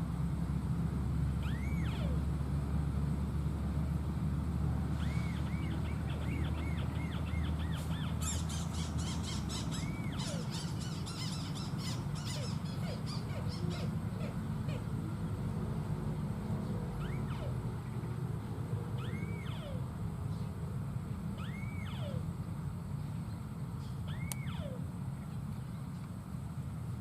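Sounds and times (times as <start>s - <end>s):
low steady rumble: 0.0s - 27.0s
birds calling: 1.3s - 2.3s, 4.9s - 26.0s
fast dense bird chatter: 5.2s - 14.9s.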